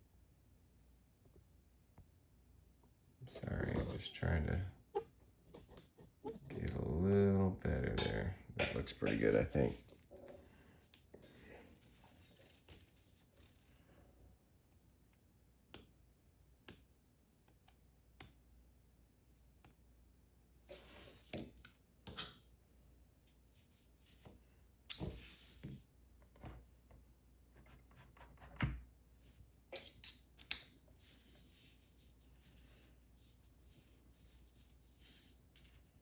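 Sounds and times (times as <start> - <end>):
small metal parts clicking: 29.7 - 30.8.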